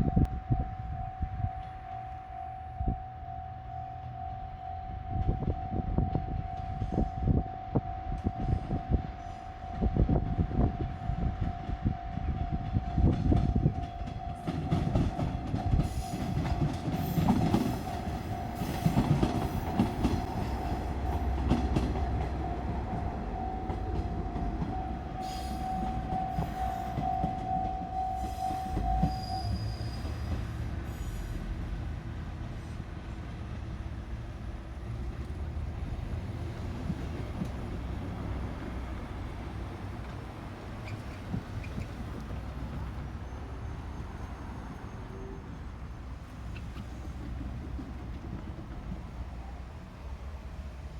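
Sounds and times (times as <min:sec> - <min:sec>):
crossing warning bell ringing: 0:00.0 - 0:30.5
train wheels clacking over rail joints: 0:12.9 - 0:29.2
diesel engines droning: 0:15.3 - 0:50.9.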